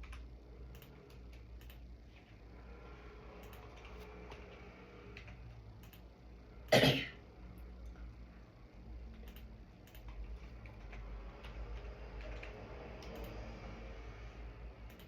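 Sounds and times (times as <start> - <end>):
faint keyboard clicks: 0.0 - 1.8, 9.1 - 13.4
person coughing: 6.7 - 7.2.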